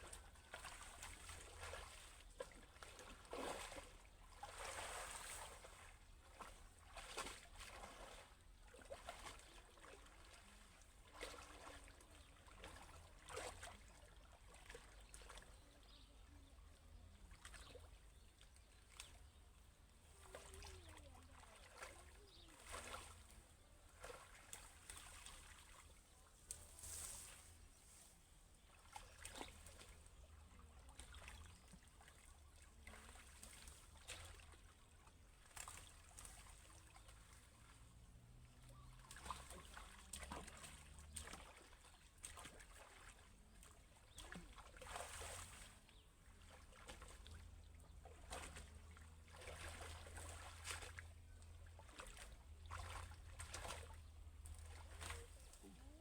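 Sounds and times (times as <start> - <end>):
short splashes and knocks: 0.0 - 16.1, 17.3 - 28.0, 28.6 - 56.0
water splashing and trickling: 0.0 - 56.0.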